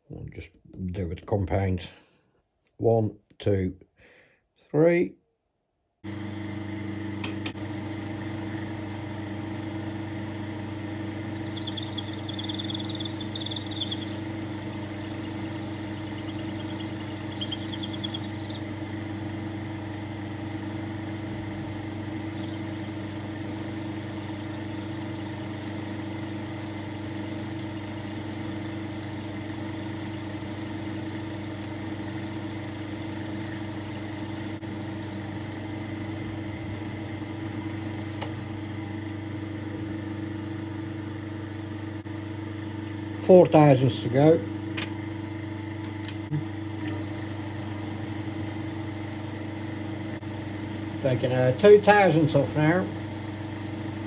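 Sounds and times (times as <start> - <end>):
lathe motor hum: 6.1 - 43.2, 44.5 - 54.0
faint high squeal: 11.4 - 18.7.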